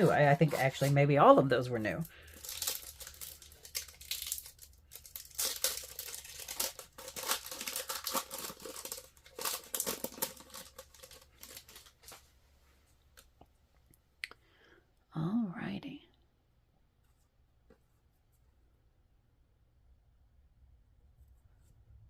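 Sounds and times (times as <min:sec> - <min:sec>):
wrapper crinkling and tearing: 0:00.0 - 0:12.2.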